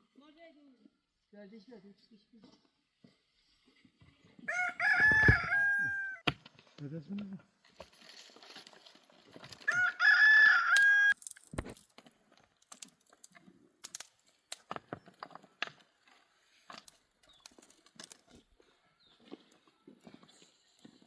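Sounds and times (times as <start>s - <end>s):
rooster crowing: 4.5s - 6.2s, 9.7s - 11.2s.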